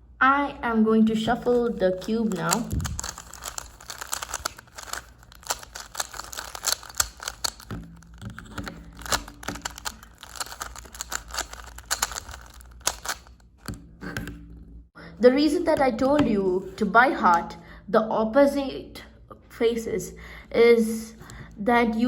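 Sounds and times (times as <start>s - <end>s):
puzzle cube clicking and rattling: 1.2s - 14.4s.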